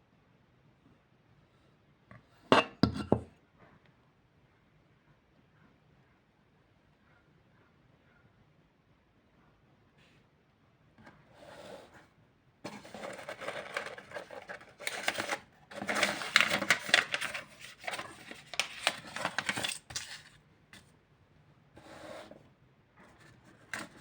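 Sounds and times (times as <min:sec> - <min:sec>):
rough scraping and rattling: 0:12.7 - 0:20.2.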